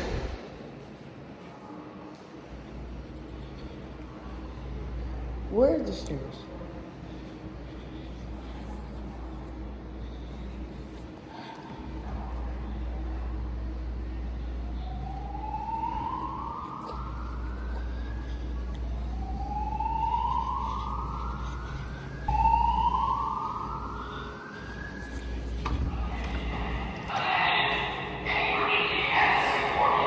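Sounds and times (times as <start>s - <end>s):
steady low hum: 0.0s - 30.0s
fire alarm whoop tone: 19.1s - 25.3s.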